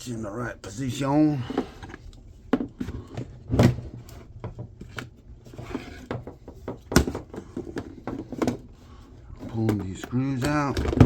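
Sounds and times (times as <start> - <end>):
plastic case knocks and clacks: 6.0 - 8.7, 9.4 - 11.0.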